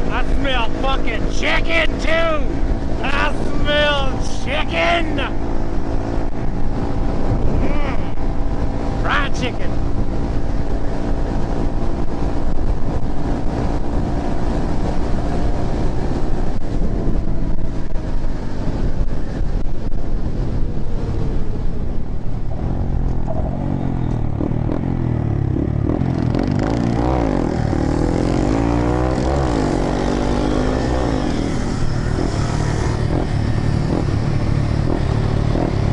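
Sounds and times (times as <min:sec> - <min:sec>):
motorcycle engine revving: 0:22.5 - 0:35.9.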